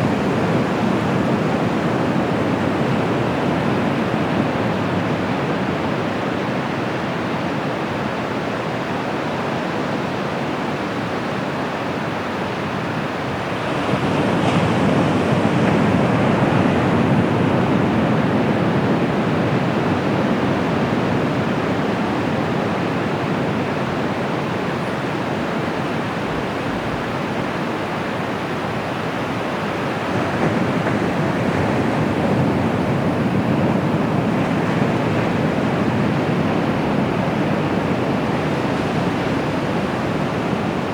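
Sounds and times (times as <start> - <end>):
ocean surf washing onto beach: 10.6 - 40.9.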